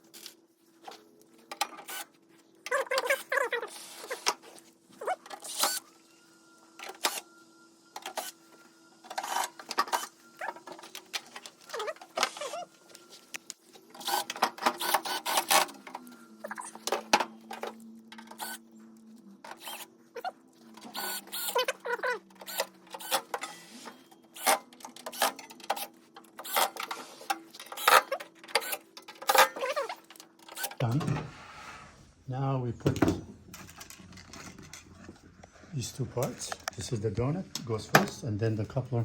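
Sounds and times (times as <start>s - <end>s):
parts and screws clicking: 13.3s - 18.6s, 19.4s - 19.9s, 20.8s - 23.7s, 24.3s - 30.9s.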